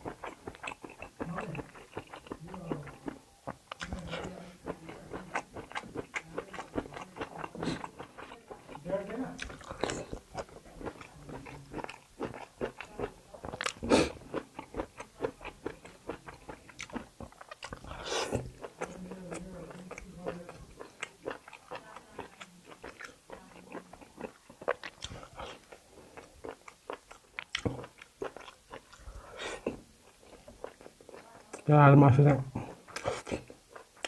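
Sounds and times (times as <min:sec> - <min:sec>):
wet chewing and biting: 0:00.0 - 0:34.0
mouth clicks and smacks: 0:23.8 - 0:25.8, 0:26.4 - 0:31.7.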